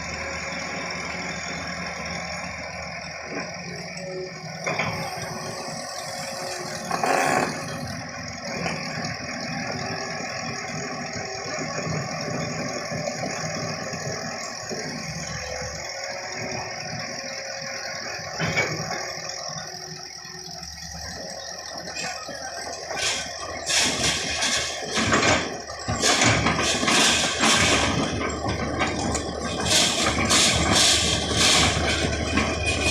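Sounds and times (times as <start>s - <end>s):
engine running: 0.0s - 32.9s
rattling noise: 21.2s - 32.9s.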